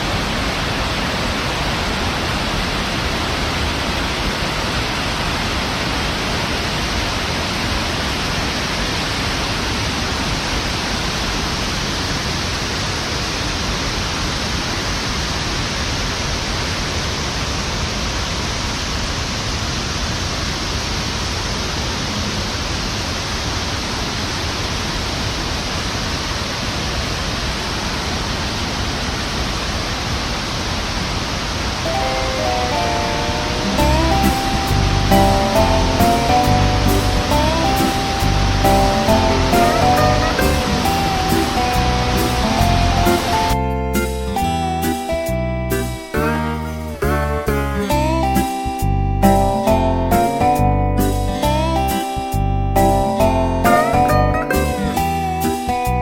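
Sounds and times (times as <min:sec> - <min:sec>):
waterfall rushing: 0:00.0 - 0:47.0
plucked music notes: 0:31.9 - 0:56.0.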